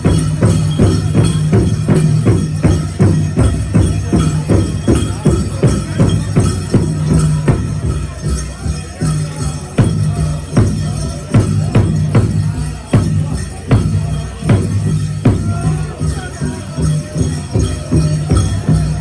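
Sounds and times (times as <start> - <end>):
drum group singing: 0.0 - 8.2, 9.8 - 19.0
big drum beat: 0.0 - 19.0.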